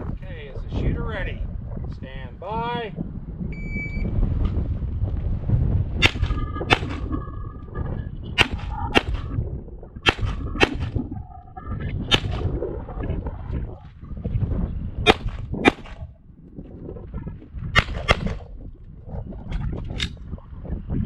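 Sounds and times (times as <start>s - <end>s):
shot timer beep: 3.6s - 4.0s
pistol shots: 6.0s - 7.1s, 8.4s - 9.3s, 10.0s - 11.0s, 12.1s - 12.4s, 15.1s - 16.0s, 17.8s - 18.4s.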